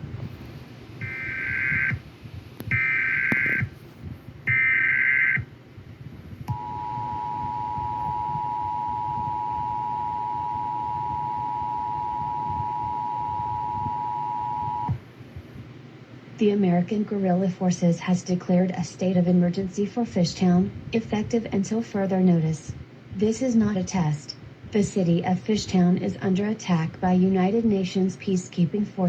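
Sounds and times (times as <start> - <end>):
data tone bursts: 6.5 - 15.0
two-tone attention signal: 6.5 - 15.0.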